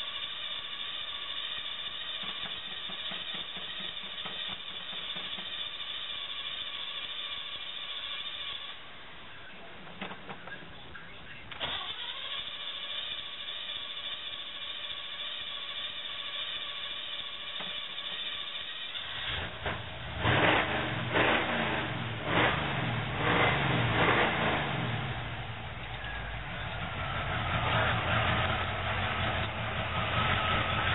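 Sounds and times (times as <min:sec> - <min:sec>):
starter motor cranking: 0:00.0 - 0:08.9, 0:11.5 - 0:21.5
engine running and revving: 0:19.0 - 0:30.9.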